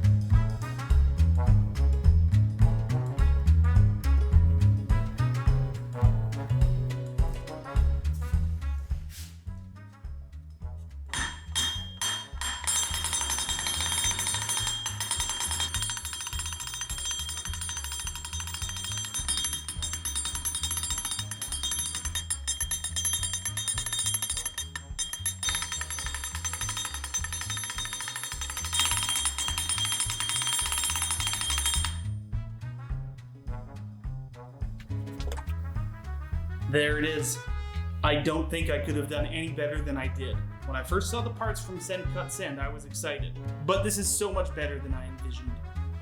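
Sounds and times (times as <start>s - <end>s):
background music with bass: 0.0s - 27.8s, 30.9s - 46.0s
metallic clinking rattle: 11.2s - 32.2s.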